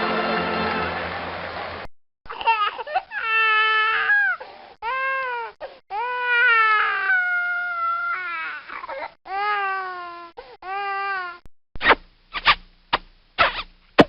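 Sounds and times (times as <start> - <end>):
baby crying: 2.3 - 11.4.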